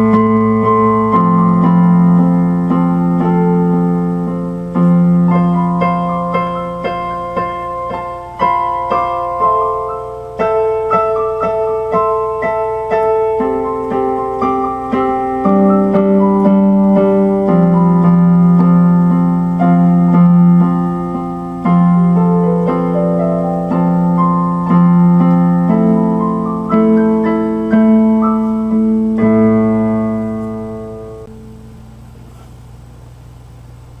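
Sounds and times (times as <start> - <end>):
keyboard music: 0.0 - 31.6.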